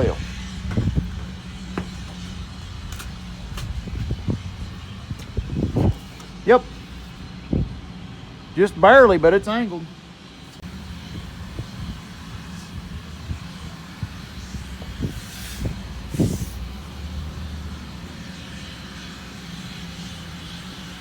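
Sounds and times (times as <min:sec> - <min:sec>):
sawmill machinery humming: 0:00.0 - 0:21.0
knocks and clanks: 0:00.1 - 0:04.2
hissing bursts: 0:14.0 - 0:21.0.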